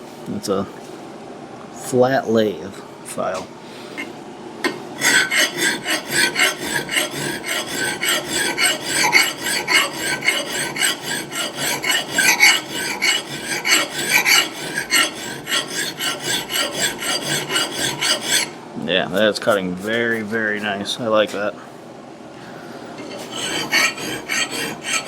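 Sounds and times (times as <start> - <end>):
file strokes on steel: 5.0 - 18.6, 23.0 - 25.0.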